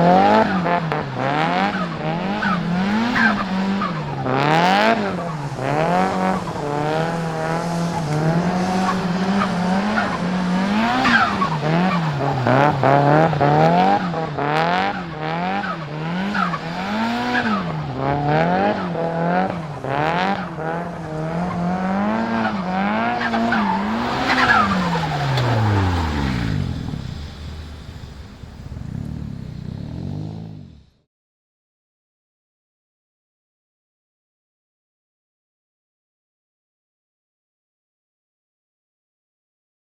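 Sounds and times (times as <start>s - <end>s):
tyre noise: 0.0s - 30.7s
car engine revving: 0.0s - 31.0s.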